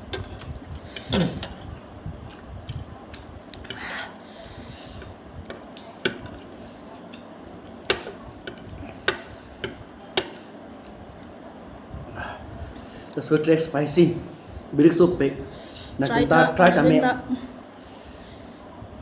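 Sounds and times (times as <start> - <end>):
utensils clinking against a dish: 5.0 - 10.5.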